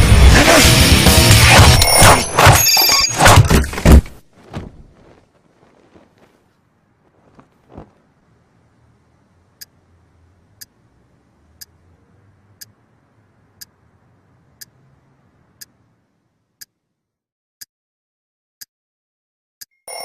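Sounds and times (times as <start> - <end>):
faint low hum: 4.8 - 16.6.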